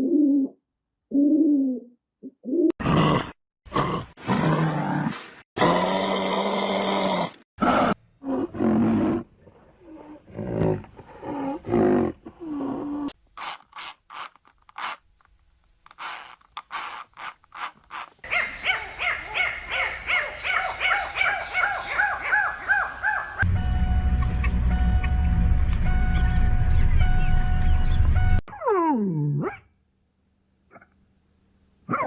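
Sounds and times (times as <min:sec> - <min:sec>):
animal calls: 0:18.2 - 0:23.4.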